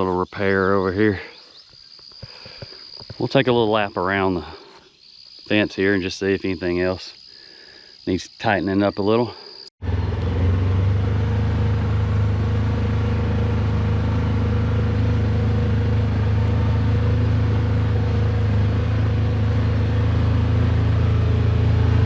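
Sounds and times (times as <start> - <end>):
vehicle engine running: 9.8 - 22.0.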